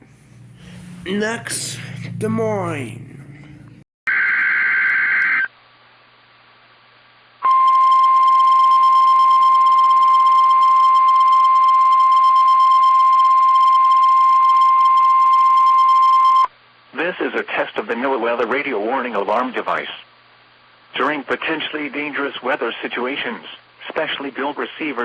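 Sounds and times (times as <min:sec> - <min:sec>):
steady high warning alarm tone: 0:07.5 - 0:16.5.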